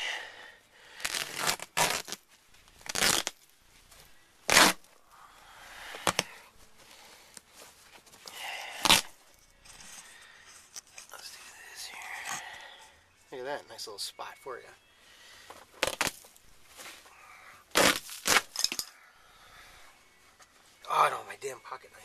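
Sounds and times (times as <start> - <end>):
carpet ripping: 1.0 - 3.5, 4.4 - 5.0, 6.0 - 6.4, 8.3 - 9.2, 15.8 - 17.0, 17.7 - 18.7
sharp crack: 17.7 - 18.9.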